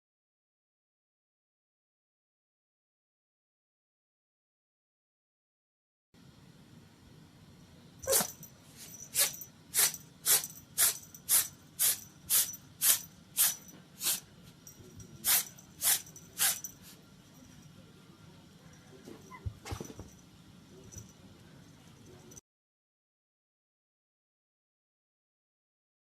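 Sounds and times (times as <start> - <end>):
cat sneezing: 8.0 - 14.2, 15.2 - 16.7.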